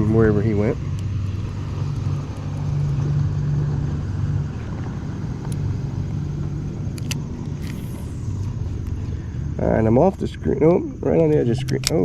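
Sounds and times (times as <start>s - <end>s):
motor running with low drone: 0.0s - 12.0s
sharp clicks: 6.8s - 9.1s, 11.1s - 12.0s.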